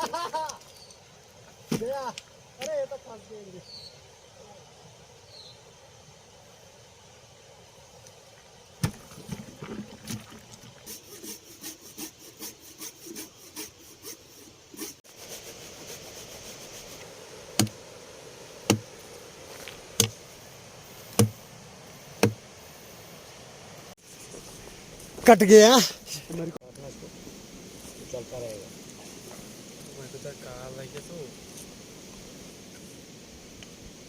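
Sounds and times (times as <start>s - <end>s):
hand saw cutting log: 10.8s - 17.8s, 21.1s - 21.4s
sharp knocks on wood: 17.6s - 17.8s, 18.7s - 18.9s, 21.1s - 21.4s, 22.2s - 22.4s.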